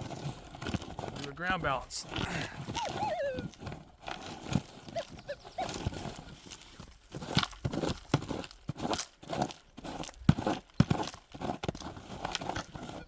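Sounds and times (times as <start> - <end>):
metal detector wavering tones: 2.7 - 3.6.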